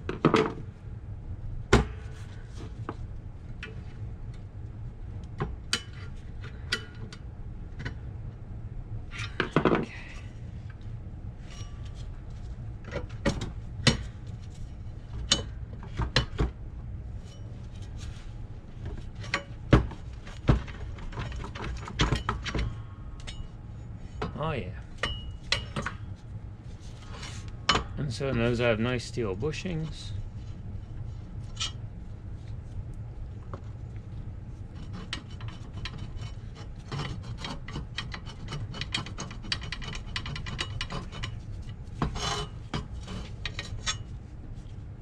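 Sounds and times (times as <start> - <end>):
steady low hum: 0.0 - 45.0.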